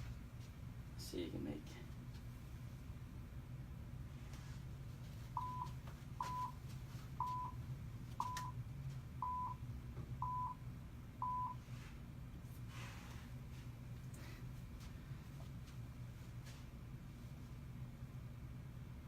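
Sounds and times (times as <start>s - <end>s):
short countdown beeps: 5.4s - 6.6s, 7.2s - 7.6s, 8.2s - 8.5s, 9.2s - 9.6s, 10.2s - 10.6s, 11.2s - 11.6s.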